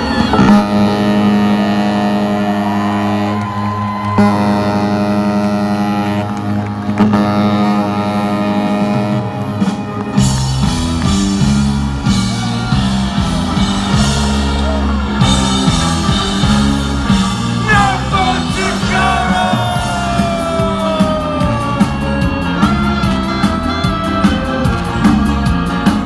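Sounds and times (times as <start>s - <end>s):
ska band and orchestra playing: 0.0s - 2.0s, 7.9s - 26.0s
person shouting or singing: 17.6s - 20.6s.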